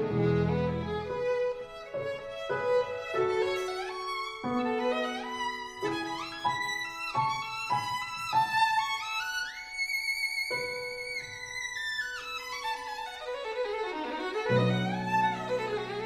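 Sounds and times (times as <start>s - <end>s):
violin melody: 0.0s - 16.0s.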